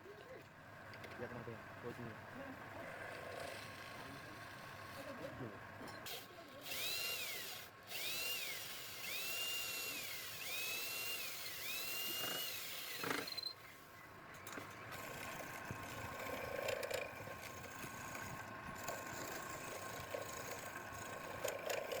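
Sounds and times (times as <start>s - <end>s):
power tool motor whining: 6.0s - 13.8s, 14.4s - 22.0s.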